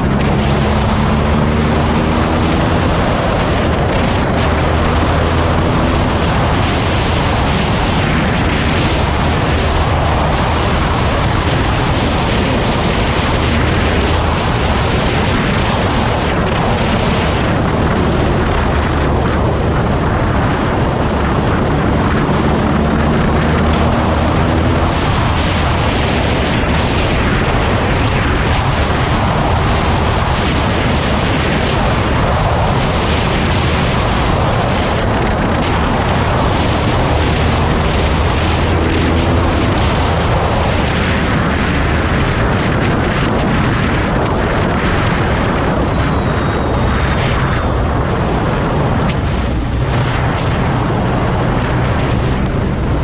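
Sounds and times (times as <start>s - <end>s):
motorcycle engine running: 0.0s - 31.0s
wind buffeting microphone: 0.0s - 53.0s.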